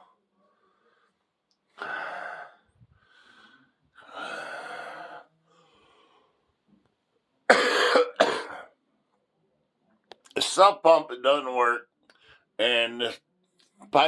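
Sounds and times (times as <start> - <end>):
sharp cough: 7.5 - 8.7.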